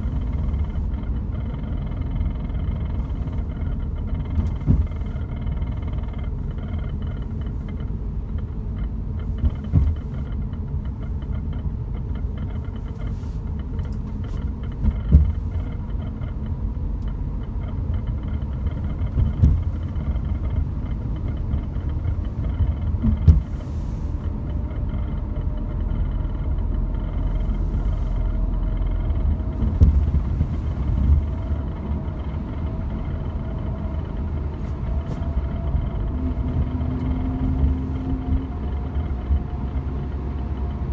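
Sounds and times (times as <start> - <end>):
road and engine rumble: 0.0 - 40.9
sharp knocks or rattles: 13.8 - 16.4.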